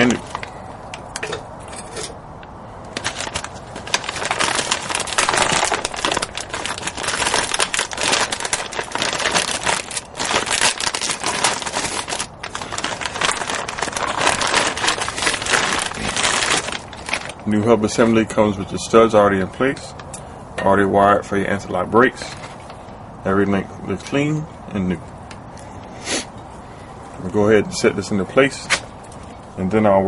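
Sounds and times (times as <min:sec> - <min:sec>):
plastic wrapping crinkling: 0:02.9 - 0:18.3.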